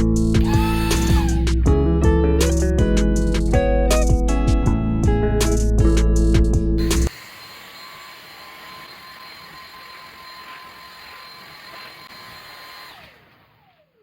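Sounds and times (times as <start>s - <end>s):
vacuum cleaner whining: 0.4s - 1.5s, 6.8s - 14.0s.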